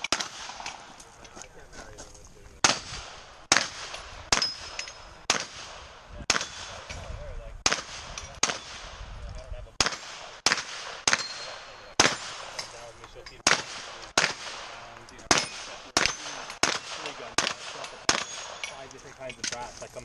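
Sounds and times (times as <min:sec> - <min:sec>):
gunshots with echo: 0:00.0 - 0:01.0, 0:02.6 - 0:07.0, 0:07.6 - 0:09.0, 0:09.8 - 0:18.7.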